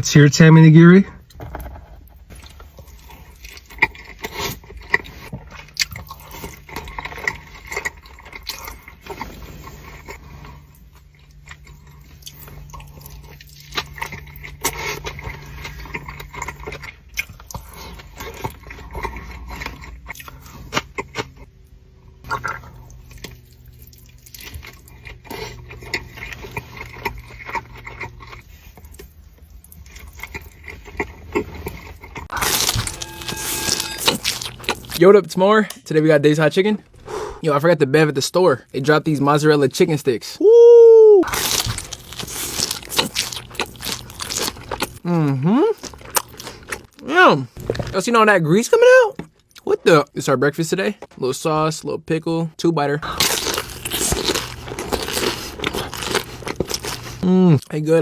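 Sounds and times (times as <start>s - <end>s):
person chewing: 2.3s - 35.0s, 41.2s - 48.0s, 53.0s - 58.0s.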